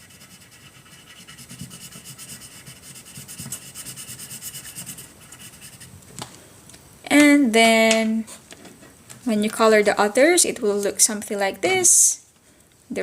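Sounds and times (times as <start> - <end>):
pencil scratching on paper: 0.0 - 5.9.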